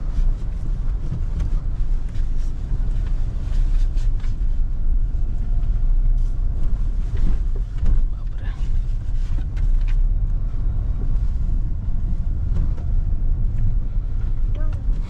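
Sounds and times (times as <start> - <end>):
car cabin road and engine rumble: 0.0 - 15.0.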